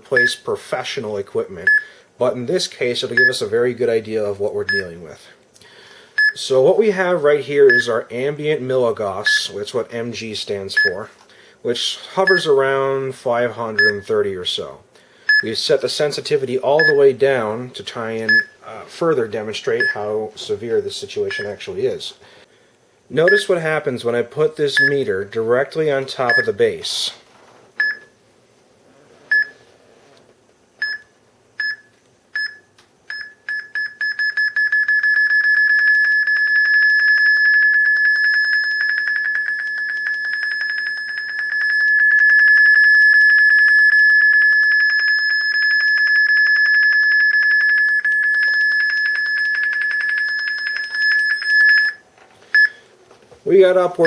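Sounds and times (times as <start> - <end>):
phone alarm high beeps: 1.7 - 1.9, 3.2 - 3.4, 4.7 - 5.0, 6.2 - 6.4, 7.7 - 8.0, 9.2 - 9.5, 10.8 - 11.0, 13.8 - 14.1, 15.3 - 15.6, 16.8 - 17.1, 19.7 - 20.1, 24.8 - 25.0, 26.3 - 26.6, 27.8 - 28.1, 29.3 - 29.6, 30.8 - 52.8.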